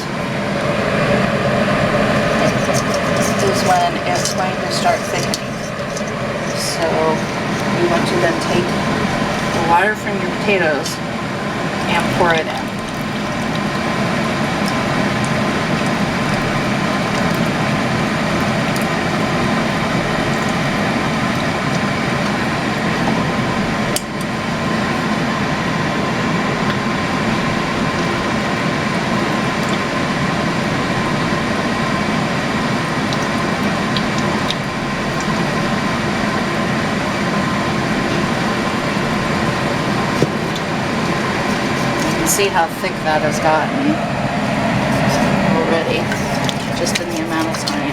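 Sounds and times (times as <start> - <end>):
water pouring into pot: 0.0 - 42.8, 44.4 - 47.9
constant mechanical hum: 0.0 - 47.9.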